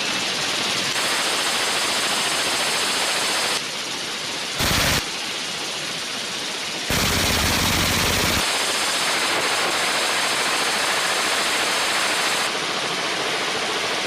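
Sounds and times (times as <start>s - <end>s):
automatic gunfire: 4.6s - 5.0s, 6.9s - 8.5s.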